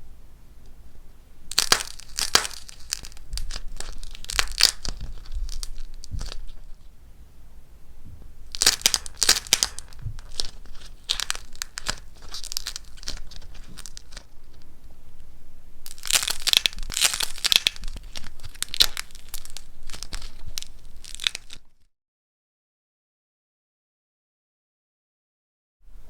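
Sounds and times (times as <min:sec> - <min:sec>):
dry clay crushed by hand: 0:01.5 - 0:06.9, 0:08.4 - 0:14.7, 0:15.8 - 0:21.8.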